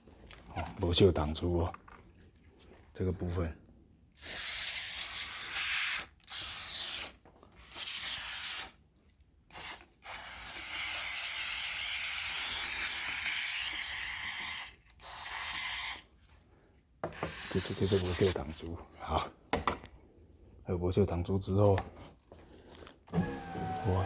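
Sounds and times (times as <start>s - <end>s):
aerosol can spraying: 4.2s - 7.1s, 7.7s - 8.8s, 9.5s - 16.0s, 17.1s - 18.4s.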